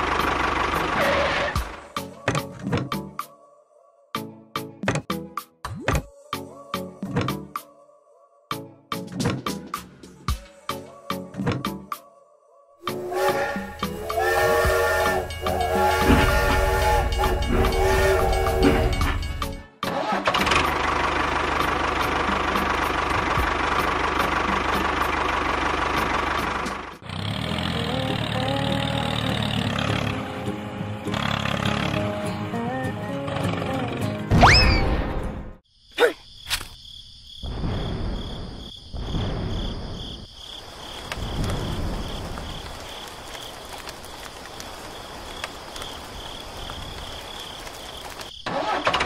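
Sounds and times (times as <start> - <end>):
engine running: 0.0 - 1.9, 15.3 - 32.3
short falling whistle: 34.4 - 35.0
insects trilling: 35.6 - 48.8.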